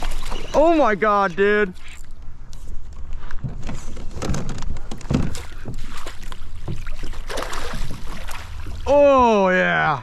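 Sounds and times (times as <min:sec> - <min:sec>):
water splashing: 0:00.0 - 0:02.1, 0:05.1 - 0:09.8
knocks and clatter in kayak: 0:03.3 - 0:08.9.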